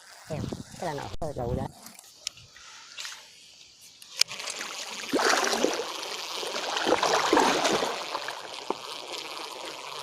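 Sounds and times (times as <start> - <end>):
water splashing and churning: 4.3 - 9.7.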